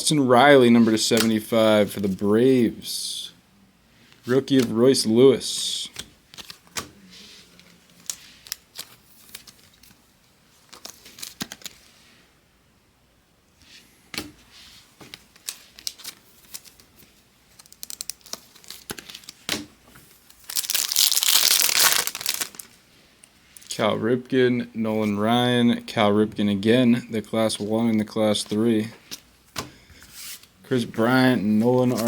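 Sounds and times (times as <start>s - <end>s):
trading cards clicking and rustling: 5.9s - 6.9s, 7.5s - 10.0s, 10.6s - 11.8s, 15.0s - 22.7s, 31.5s - 32.0s
card pack wrapper ripped open: 20.4s - 22.7s.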